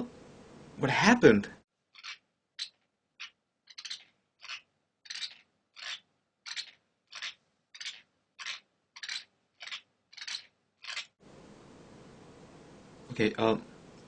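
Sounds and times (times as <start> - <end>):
teeth grinding: 2.0 - 11.2.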